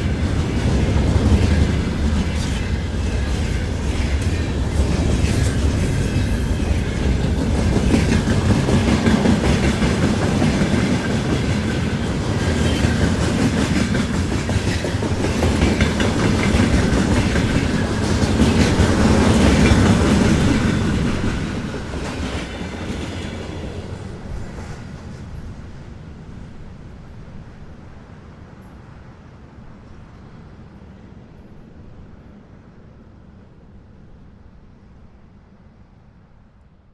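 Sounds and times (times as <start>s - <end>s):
freight train wheels clattering: 0.0s - 25.9s.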